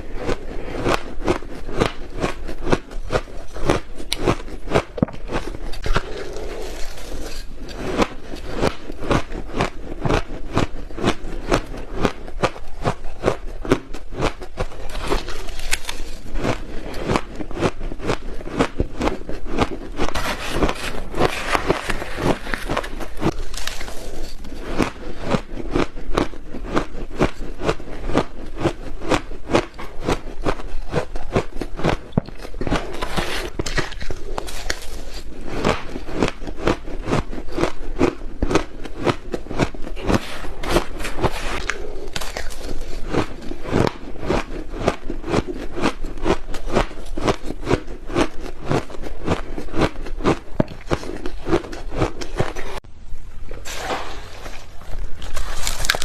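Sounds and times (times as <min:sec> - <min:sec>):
ice crunching being chewed: 0:00.0 - 0:52.8, 0:54.4 - 0:56.0.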